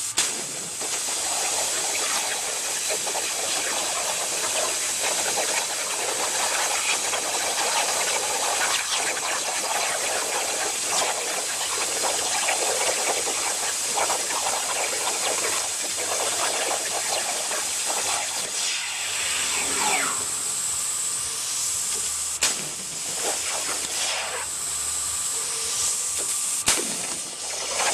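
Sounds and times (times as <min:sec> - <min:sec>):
plasma cutter hissing: 0:00.0 - 0:27.9
high whine: 0:16.9 - 0:25.8.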